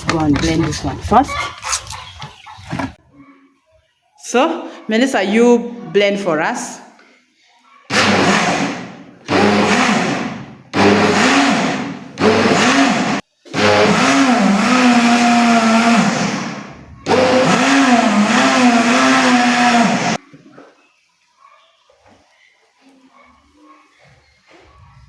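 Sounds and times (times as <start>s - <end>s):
blender motor whining: 7.9s - 20.2s.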